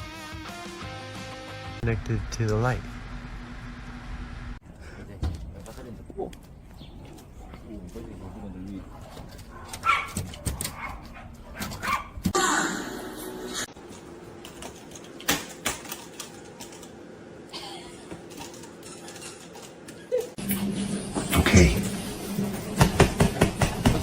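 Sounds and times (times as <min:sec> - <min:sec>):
dog sounds: 0:07.0 - 0:12.4.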